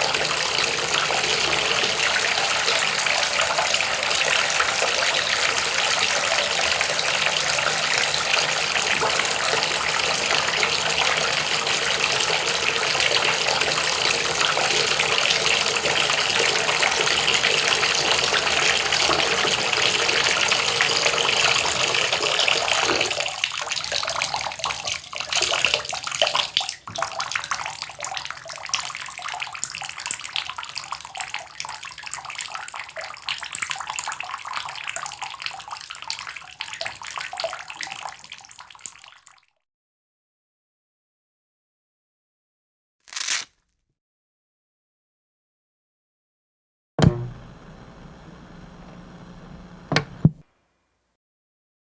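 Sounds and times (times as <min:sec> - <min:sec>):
running water: 0:00.0 - 0:22.9
sharp click: 0:47.0 - 0:50.4.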